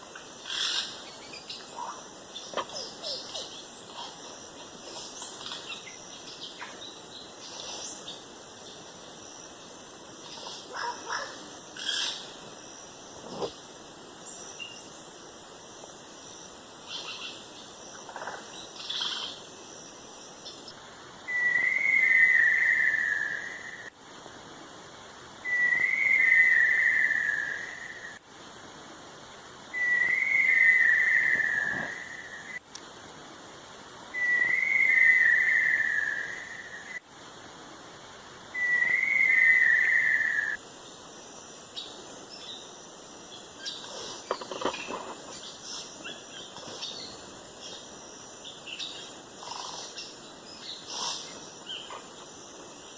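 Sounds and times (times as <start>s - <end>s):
faint chirps: 0.0s - 13.6s, 29.7s - 32.6s, 38.5s - 52.9s
long wavering whistled call: 21.3s - 23.9s, 25.4s - 28.2s, 29.7s - 32.6s, 34.1s - 37.0s, 38.5s - 40.6s.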